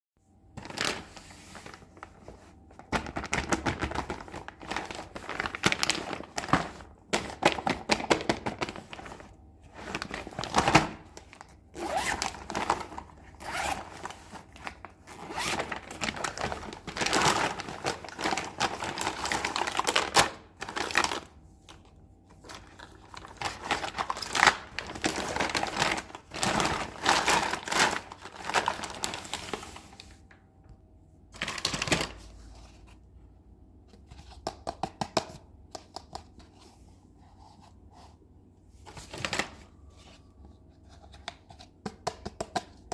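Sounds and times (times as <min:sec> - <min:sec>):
packaging crinkling and tearing: 0:00.6 - 0:21.8, 0:22.4 - 0:30.2, 0:31.4 - 0:32.4.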